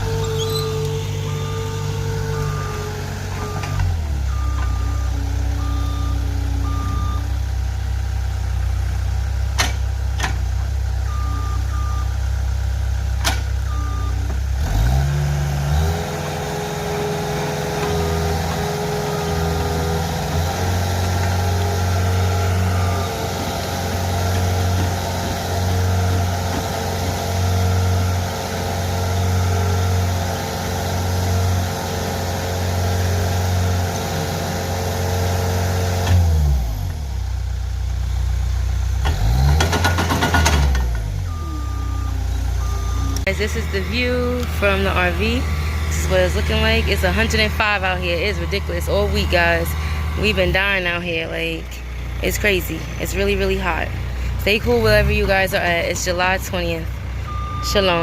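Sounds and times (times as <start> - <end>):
heavy machine engine idling: 0.0 - 14.6, 16.1 - 35.7, 39.6 - 58.0
reversing beeps: 0.2 - 7.4, 11.1 - 12.1, 13.7 - 14.3, 21.5 - 23.6, 41.2 - 51.3, 57.2 - 58.0.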